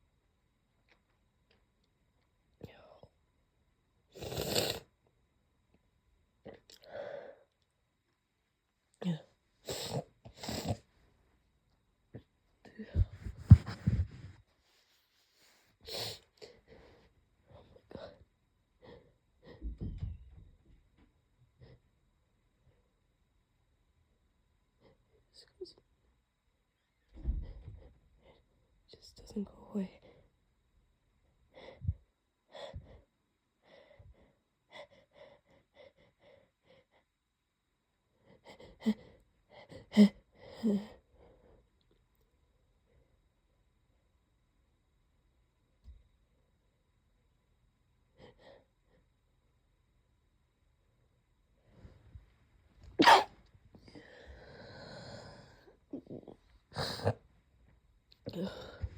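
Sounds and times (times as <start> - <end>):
stifled sneeze: 53.0 - 53.4.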